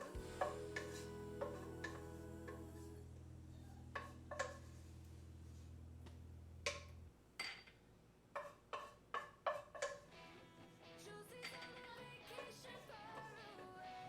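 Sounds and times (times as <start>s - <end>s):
low steady music: 0.0s - 7.1s.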